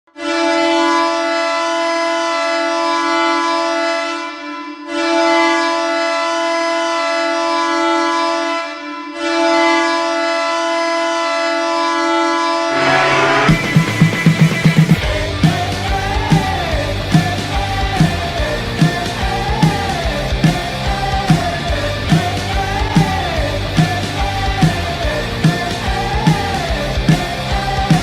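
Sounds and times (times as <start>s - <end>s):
goal horn blasts: 0.2s - 14.9s.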